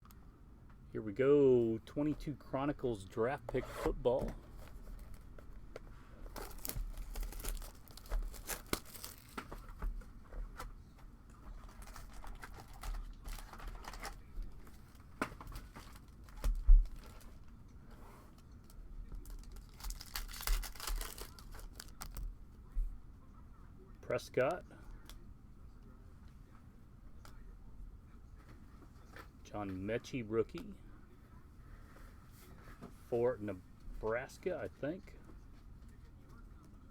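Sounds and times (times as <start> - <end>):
foil packs being torn open: 6.3 - 9.5, 19.2 - 22.2
wrappers crinkling: 6.3 - 9.5, 11.6 - 17.4, 18.6 - 22.2.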